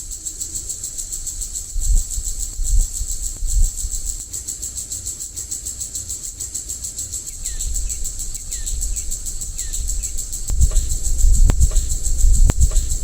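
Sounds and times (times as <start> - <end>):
insect trill: 0.0 - 13.0
low rumble: 10.0 - 13.0.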